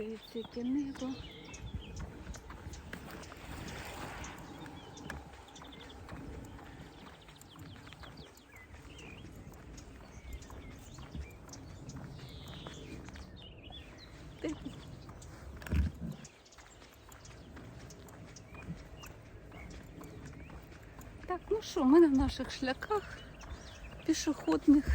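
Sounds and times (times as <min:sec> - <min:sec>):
footsteps on outdoor path: 0:00.0 - 0:24.9.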